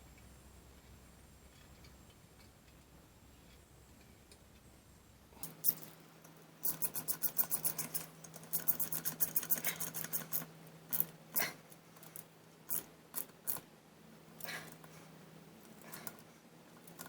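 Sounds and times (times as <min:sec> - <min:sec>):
ratchet spanner clicking: 0:06.6 - 0:11.2, 0:12.0 - 0:13.7.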